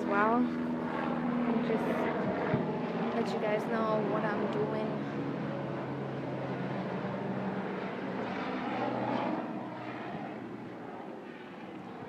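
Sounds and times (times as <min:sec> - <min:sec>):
low motor drone: 0:00.0 - 0:12.0.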